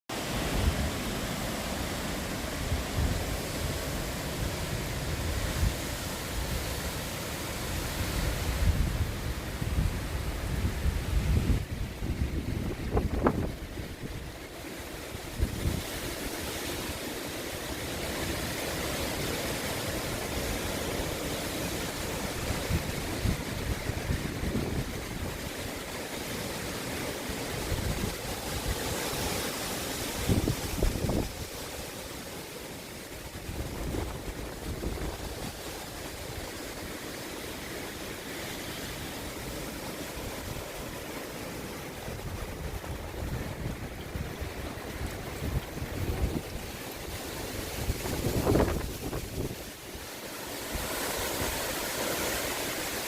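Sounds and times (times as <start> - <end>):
hurricane wind and rain: 0.1 - 53.0
wind gusts thumping on microphone: 0.1 - 53.0
wind rushing: 41.9 - 50.0.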